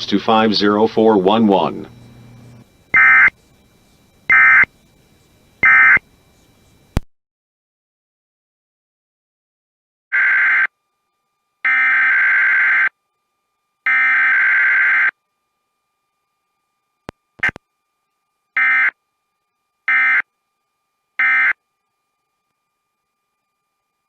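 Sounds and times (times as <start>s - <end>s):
digital data bursts: 0.3s - 7.0s.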